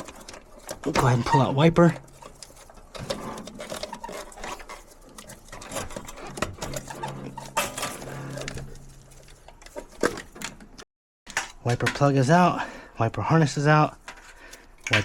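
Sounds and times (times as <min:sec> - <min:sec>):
plastic connectors clicking and rattling: 0:00.0 - 0:12.3.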